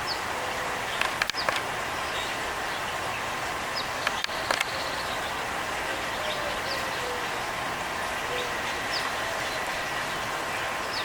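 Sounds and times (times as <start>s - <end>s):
outdoor background noise: 0.0s - 11.0s
sharp clicks: 1.0s - 1.7s, 4.0s - 4.8s.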